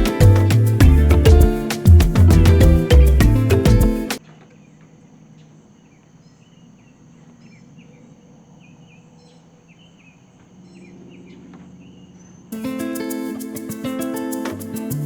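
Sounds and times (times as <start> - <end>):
acoustic guitar music: 0.0 - 4.2, 12.5 - 15.0
small birds chirping: 0.0 - 15.0.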